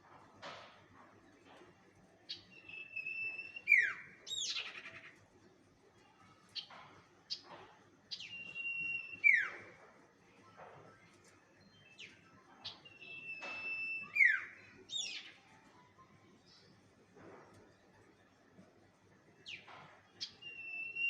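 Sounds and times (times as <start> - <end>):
bird lure whistle call: 8.2 - 9.6, 12.9 - 14.5, 20.3 - 21.0.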